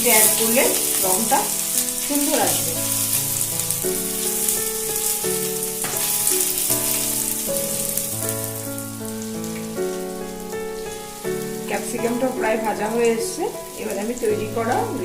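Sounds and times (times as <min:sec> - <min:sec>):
background music with held notes: 0:00.0 - 0:15.0
light stirring strokes: 0:00.0 - 0:15.0
vegetables sizzling in oil: 0:00.0 - 0:15.0.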